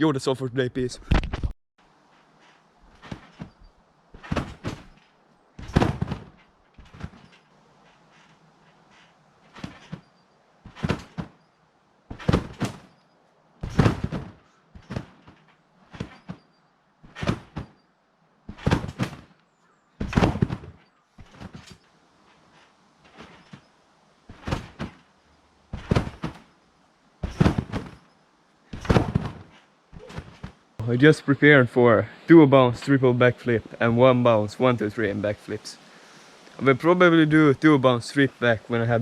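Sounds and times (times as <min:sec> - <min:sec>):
trampoline landing thumps: 0:02.1 - 0:19.4, 0:20.0 - 0:26.6, 0:27.2 - 0:30.7.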